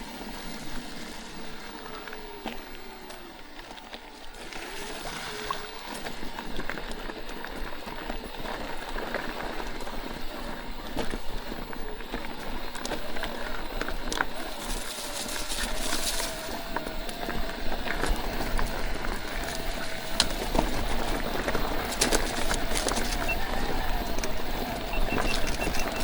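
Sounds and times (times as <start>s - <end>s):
bike tyres on dirt trail: 0.0s - 26.0s
faint wavering motor whine: 0.0s - 26.0s
bike knocks and rattles: 10.5s - 26.0s.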